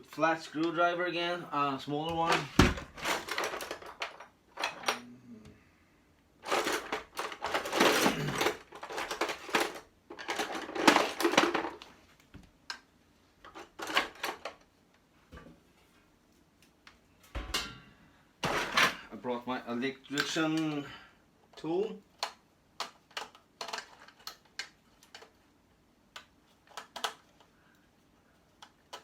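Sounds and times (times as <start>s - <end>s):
metal tools clattering: 2.2s - 5.0s, 6.4s - 11.8s.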